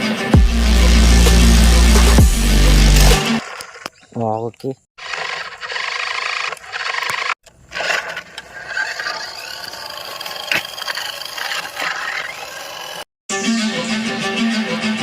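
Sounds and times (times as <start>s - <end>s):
toy car scraping and rattling: 5.0s - 13.1s.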